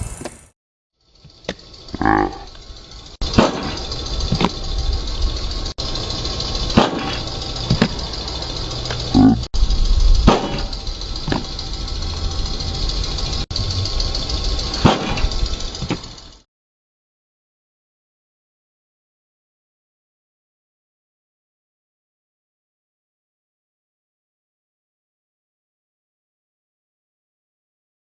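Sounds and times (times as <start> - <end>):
low rumble: 1.2 - 16.4.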